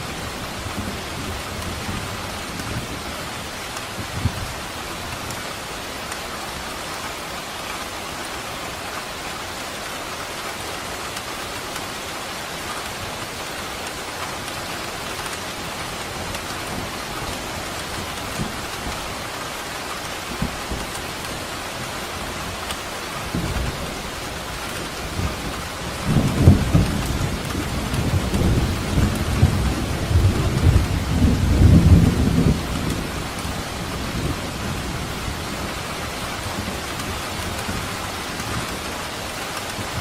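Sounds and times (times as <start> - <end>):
dense rainfall: 0.0 - 40.0.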